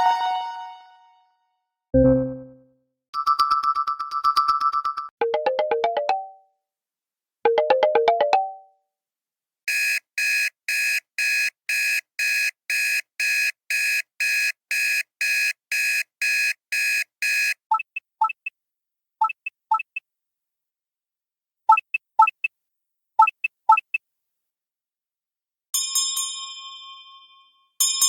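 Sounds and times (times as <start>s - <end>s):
electronic alarm beeps: 13.2s - 18.5s, 19.2s - 20.0s.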